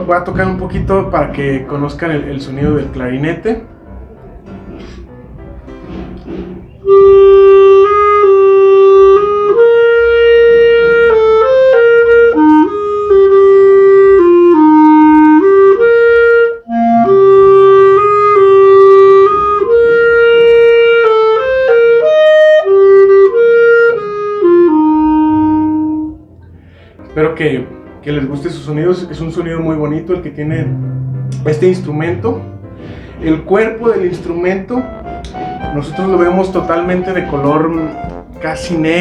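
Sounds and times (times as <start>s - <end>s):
solo clarinet melody: 6.8s - 26.3s, 30.5s - 33.5s, 34.5s - 39.0s.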